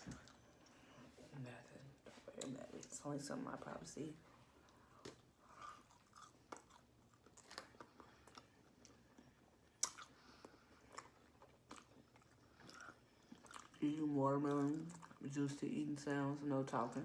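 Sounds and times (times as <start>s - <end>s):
person chewing food: 0.0s - 1.0s, 4.6s - 13.9s, 14.5s - 15.2s
soft mouth clicks: 9.8s - 10.1s.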